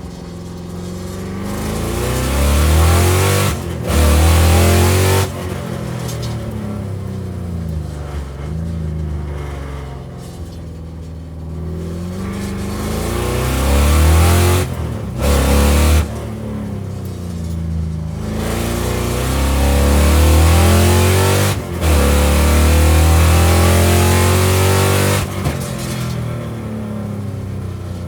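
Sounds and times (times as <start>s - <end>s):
car engine accelerating: 0.0s - 28.0s.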